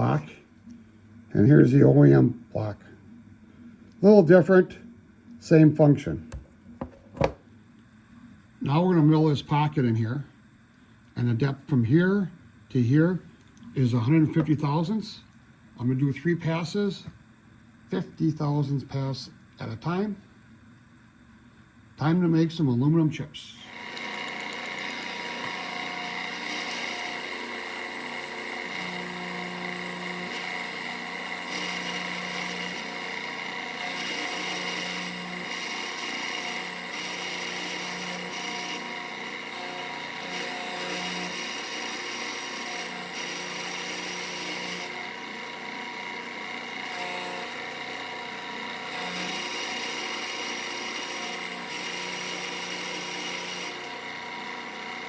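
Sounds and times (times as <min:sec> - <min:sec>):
router spindle whine: 0:23.5 - 0:55.0
cutter hissing in metal: 0:23.6 - 0:55.0
machine moving low hum: 0:23.6 - 0:55.0.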